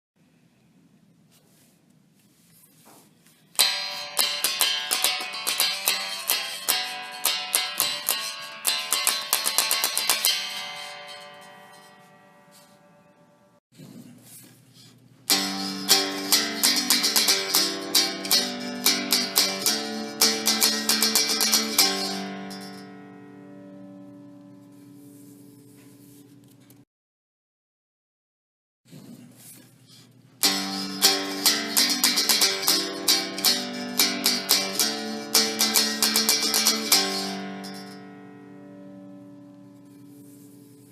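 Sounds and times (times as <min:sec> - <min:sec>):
twangy stringed instrument picked: 0:03.6 - 0:13.0, 0:15.3 - 0:24.9, 0:30.4 - 0:40.9
cigar box guitar strummed: 0:03.6 - 0:13.1, 0:15.3 - 0:25.8, 0:30.4 - 0:40.9.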